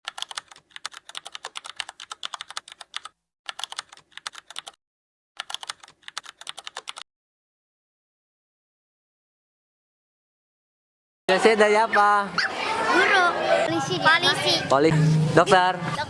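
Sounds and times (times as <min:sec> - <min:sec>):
rapid irregular clicking: 0:00.0 - 0:04.8, 0:05.4 - 0:07.0.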